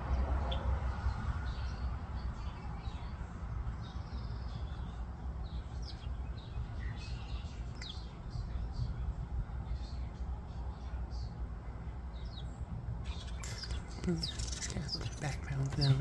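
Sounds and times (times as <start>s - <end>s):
steady low rumble: 0.0s - 16.0s
chicks peeping: 12.2s - 16.0s.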